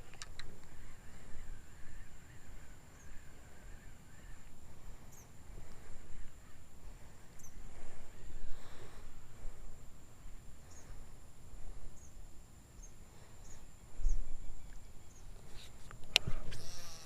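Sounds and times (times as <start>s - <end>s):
bird chirps: 0.7s - 5.4s, 6.1s - 8.5s, 12.8s - 15.3s.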